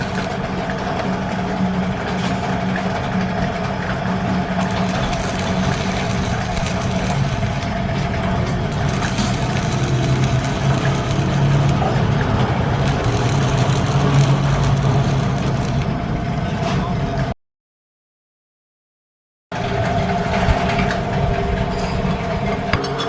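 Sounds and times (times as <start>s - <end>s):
engine idling hum: 0.0s - 17.3s.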